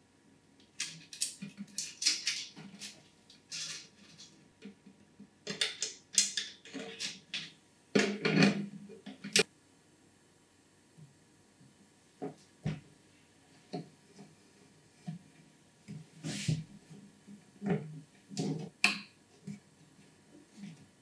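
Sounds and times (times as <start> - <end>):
knocks and scraping rustles: 0.8 - 9.5, 13.6 - 18.8.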